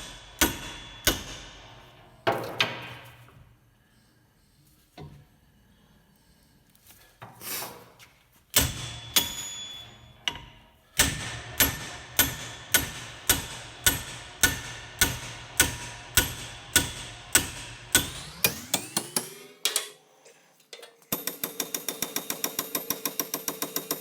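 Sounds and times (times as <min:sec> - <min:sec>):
hammer clanging on metal: 0:08.6 - 0:20.0.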